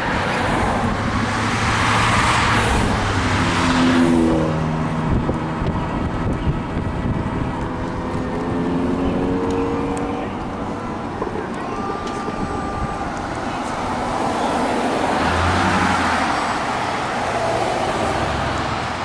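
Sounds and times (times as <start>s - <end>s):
car passing close by: 0.0s - 6.1s, 7.0s - 19.0s
traffic noise: 0.0s - 19.0s
car horns: 6.2s - 18.9s.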